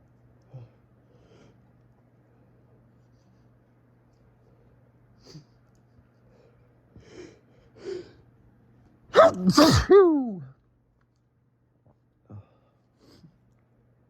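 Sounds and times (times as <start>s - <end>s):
person sneezing: 9.1s - 10.5s.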